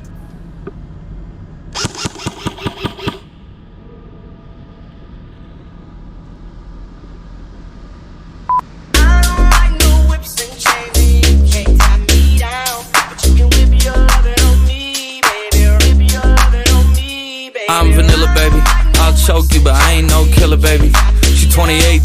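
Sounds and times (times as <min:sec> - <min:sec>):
low steady rumble: 0:00.0 - 0:14.8, 0:17.8 - 0:22.0
airsoft gun firing: 0:01.8 - 0:03.3
hip-hop music with heavy beat: 0:09.0 - 0:22.0.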